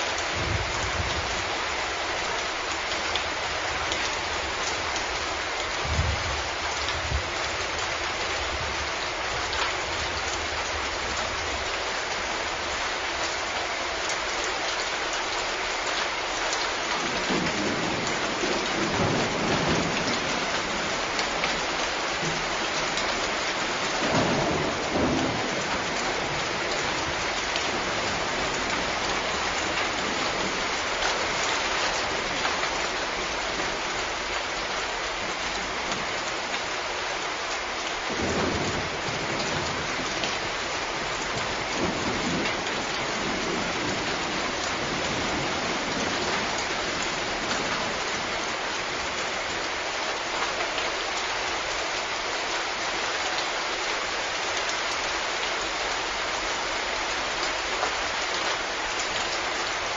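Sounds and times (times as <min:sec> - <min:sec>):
steady rain falling: 0:00.0 - 0:59.9
distant thunder rumbles: 0:00.3 - 0:01.5, 0:05.8 - 0:07.6, 0:17.0 - 0:32.4, 0:38.0 - 0:48.6.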